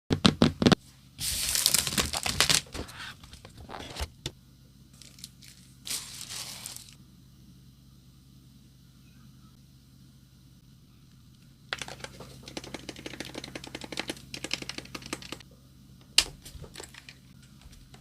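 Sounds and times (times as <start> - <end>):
packaging tearing and rustling: 1.2 - 4.0, 5.0 - 7.0.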